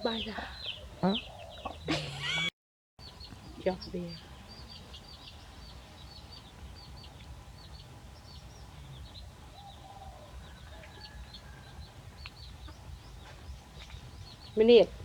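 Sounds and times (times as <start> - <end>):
low steady background noise: 0.0 - 15.0
small birds chirping: 0.0 - 15.0.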